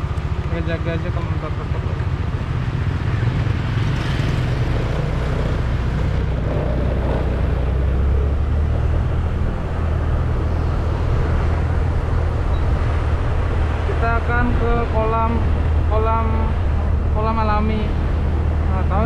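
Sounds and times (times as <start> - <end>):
motorcycle engine running: 0.0 - 13.8.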